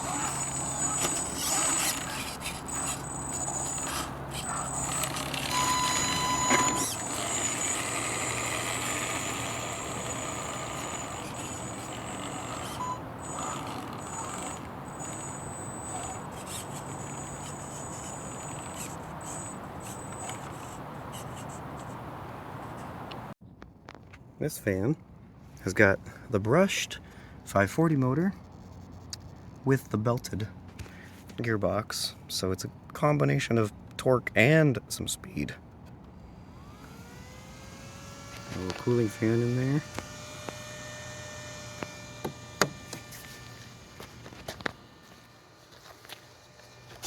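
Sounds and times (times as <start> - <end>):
electric motor whining: 0.0 - 23.3, 36.3 - 47.0
short pitched tone: 4.5 - 7.0.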